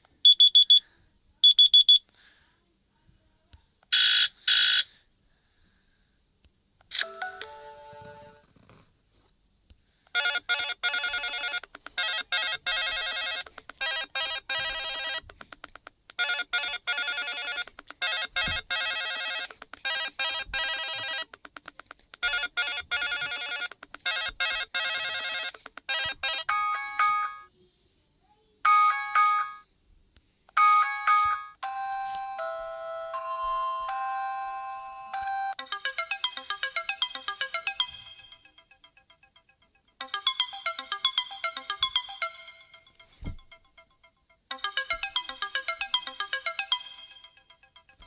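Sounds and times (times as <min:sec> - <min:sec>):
trilling phone ringtone: 0:10.1 - 0:15.2, 0:16.2 - 0:21.3, 0:22.2 - 0:27.5, 0:28.7 - 0:29.6, 0:30.6 - 0:48.0
chiming phone ringtone: 0:10.2 - 0:15.2, 0:16.2 - 0:21.3, 0:22.2 - 0:27.5, 0:28.7 - 0:29.6, 0:30.6 - 0:48.0.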